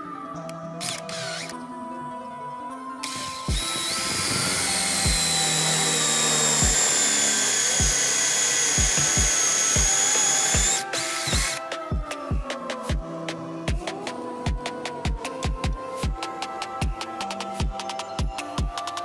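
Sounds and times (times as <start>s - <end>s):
background music with beat: 0.0s - 19.0s
electric drill whining: 0.8s - 1.6s, 3.0s - 11.7s.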